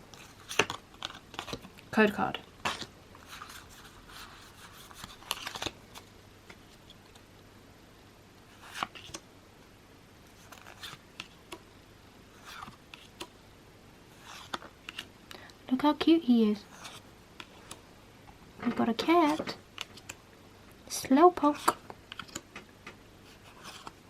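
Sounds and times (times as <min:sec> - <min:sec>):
trading cards sliding: 0:10.4 - 0:11.6, 0:14.1 - 0:15.1, 0:16.7 - 0:17.8, 0:23.2 - 0:24.0.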